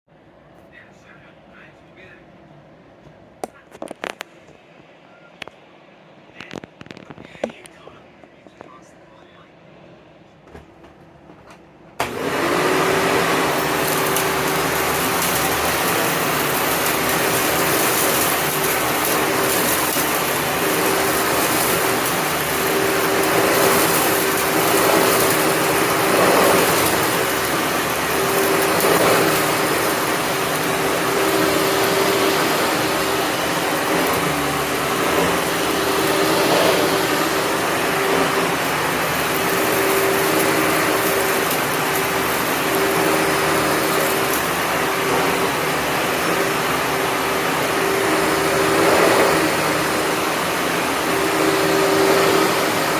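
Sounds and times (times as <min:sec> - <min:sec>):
vacuum cleaner running: 0:10.9 - 0:52.9.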